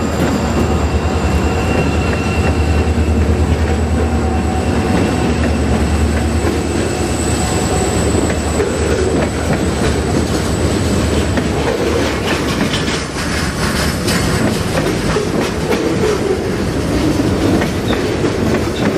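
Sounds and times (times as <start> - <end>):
freight train cars rumbling: 0.0 - 18.9
wheels clacking over rail joints: 7.6 - 18.9.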